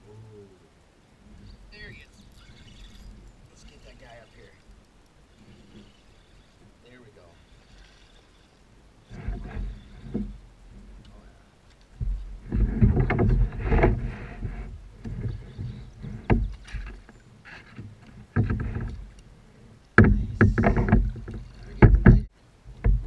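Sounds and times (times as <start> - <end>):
water splashing: 1.0 - 19.2
knocks and rubbing against kayak: 1.3 - 23.0.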